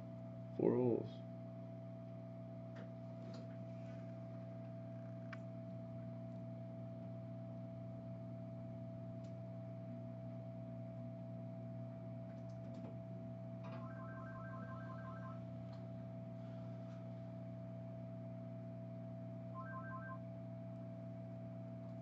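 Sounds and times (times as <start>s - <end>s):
electrical hum: 0.0s - 22.0s
constant high tone: 13.7s - 15.5s, 19.6s - 20.2s.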